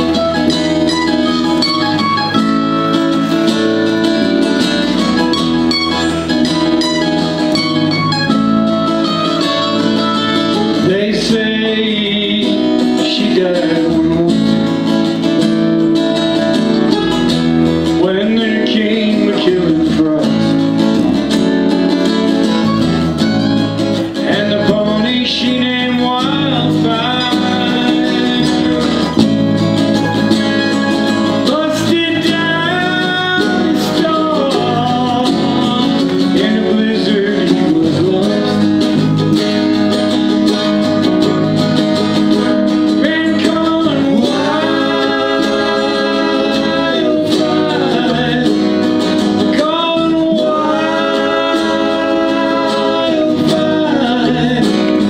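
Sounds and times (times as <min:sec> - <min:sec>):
acoustic country-folk band with guitars: 0:00.0 - 0:55.0
person singing: 0:09.0 - 0:14.9, 0:17.9 - 0:20.5, 0:24.1 - 0:29.3, 0:30.1 - 0:38.9, 0:42.9 - 0:55.0.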